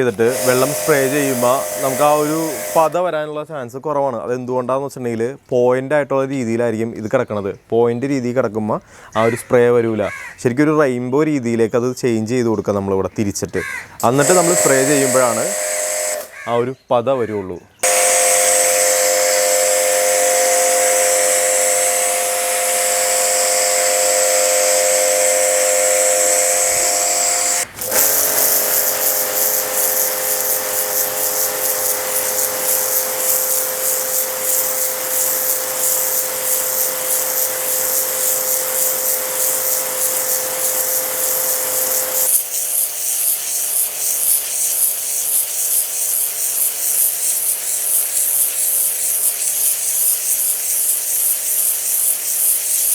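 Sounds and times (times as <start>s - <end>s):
pressure washer motor whine: 0.0s - 3.0s, 14.0s - 16.3s, 17.8s - 52.9s
water spray hissing: 0.0s - 3.0s, 14.0s - 16.4s, 17.8s - 52.9s.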